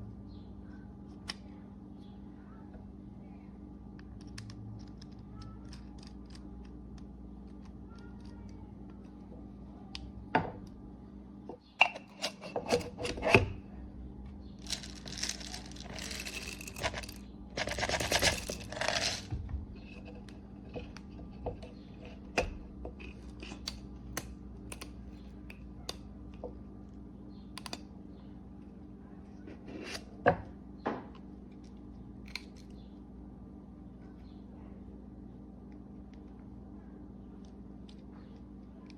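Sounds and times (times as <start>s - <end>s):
steady low hum: 0.0s - 38.9s
rustling: 14.6s - 19.3s
small objects clicking and knocking: 14.6s - 24.9s.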